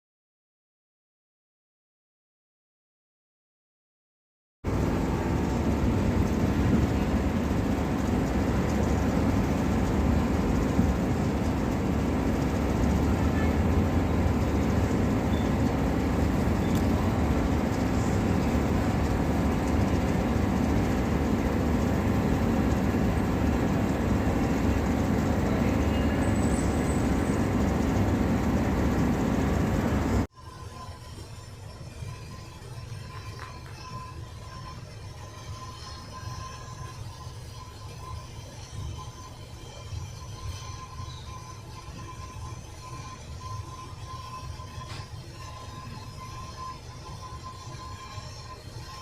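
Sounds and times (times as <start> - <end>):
gas torch roaring: 4.7 - 30.3.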